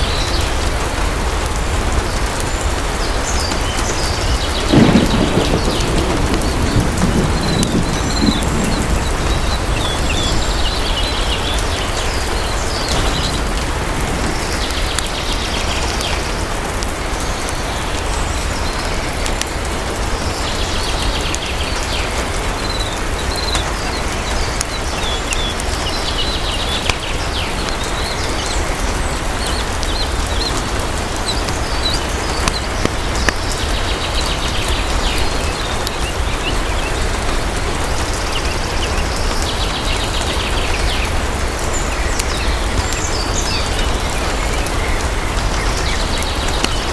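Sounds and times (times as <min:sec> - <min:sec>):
heavy rain: 0:00.0 - 0:46.9
birds chirping: 0:04.1 - 0:15.4
fireplace crackling: 0:04.4 - 0:10.6.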